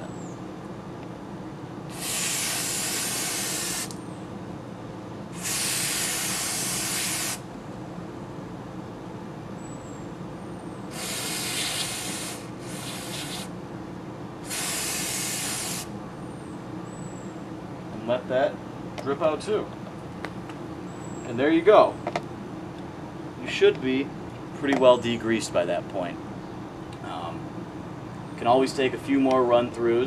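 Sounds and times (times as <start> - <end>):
aerosol can spraying: 1.9 - 4.0, 5.4 - 7.4, 10.9 - 13.5, 14.4 - 15.9.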